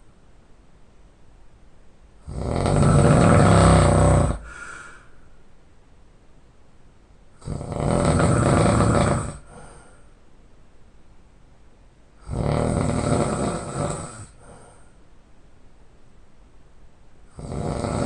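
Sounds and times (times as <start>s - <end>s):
loud snoring: 2.2s - 4.7s, 7.4s - 9.8s, 12.2s - 14.6s, 17.3s - 18.0s
faint breath: 4.0s - 5.5s, 9.4s - 10.2s, 14.2s - 15.1s.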